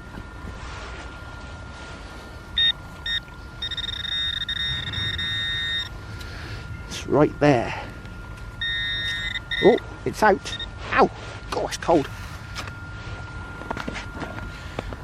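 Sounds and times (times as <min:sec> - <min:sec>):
metal detector beeping: 0:02.5 - 0:10.8.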